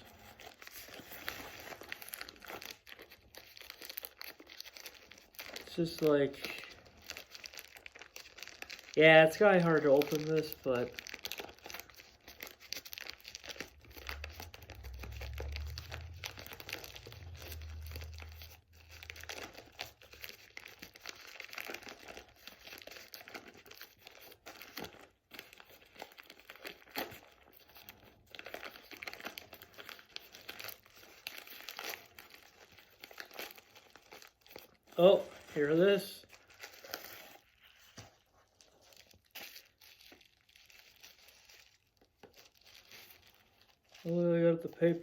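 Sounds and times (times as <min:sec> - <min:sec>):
packaging tearing and crinkling: 0:00.0 - 0:45.0
low rumble of handling: 0:13.7 - 0:19.8.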